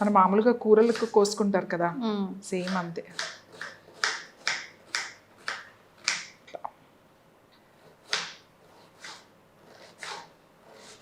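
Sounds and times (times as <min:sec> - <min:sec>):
knife chopping onion on board: 0:02.6 - 0:06.4, 0:08.0 - 0:11.0.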